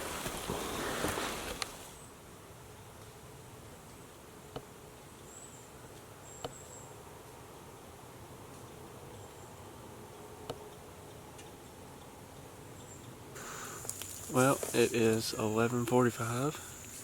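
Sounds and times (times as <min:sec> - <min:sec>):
rustling handling noise: 0:13.7 - 0:15.4.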